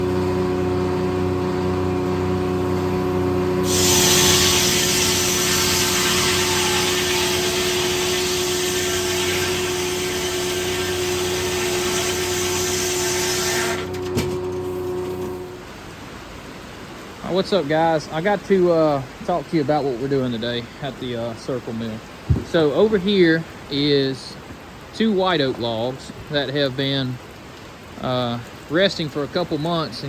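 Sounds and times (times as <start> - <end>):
sawmill running: 0.0 - 15.9
circular blade cutting log: 3.6 - 14.3.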